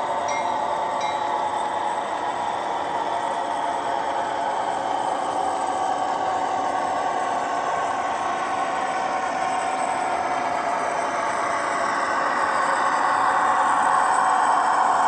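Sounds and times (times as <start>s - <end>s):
model train sound through small speaker: 0.0s - 15.0s.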